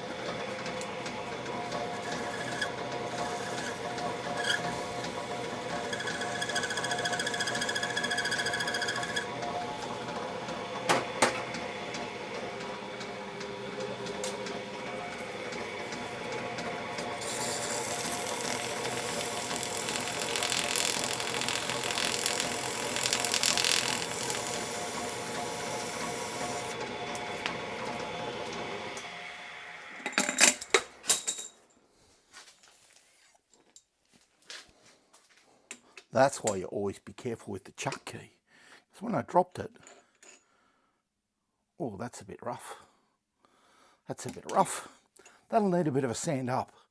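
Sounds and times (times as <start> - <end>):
metal lathe running: 0.0 - 29.8.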